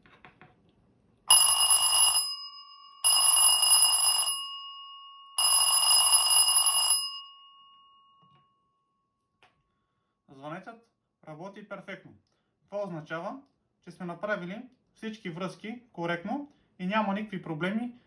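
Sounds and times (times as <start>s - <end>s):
electric alarm bell ringing: 1.3s - 8.2s.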